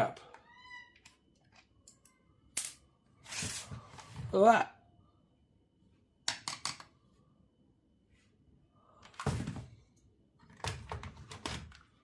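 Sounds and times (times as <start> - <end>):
tools clicking and knocking: 6.3 - 6.9.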